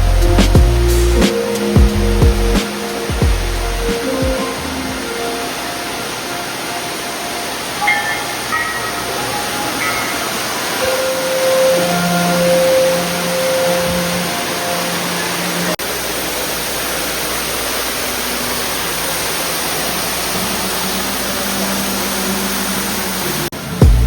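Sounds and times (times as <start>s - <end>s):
faint held music notes: 0.0s - 16.0s
waterfall rushing: 0.0s - 24.0s.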